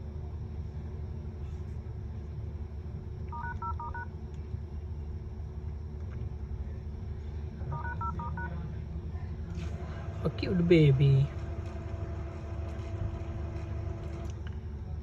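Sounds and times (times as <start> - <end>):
phone key beeps: 3.3 - 4.0.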